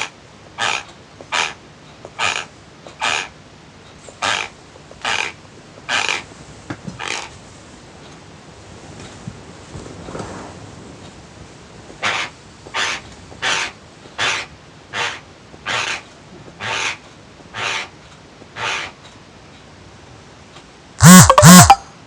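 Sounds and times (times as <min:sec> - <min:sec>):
teeth grinding: 0:21.0 - 0:21.8.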